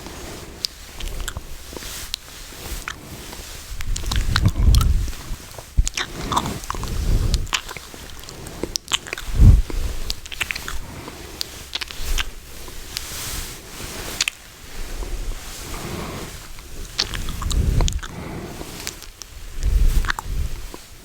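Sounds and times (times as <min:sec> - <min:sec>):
wet mouth clicks and lip smacks: 0:00.6 - 0:13.1, 0:16.6 - 0:18.2, 0:18.8 - 0:20.8.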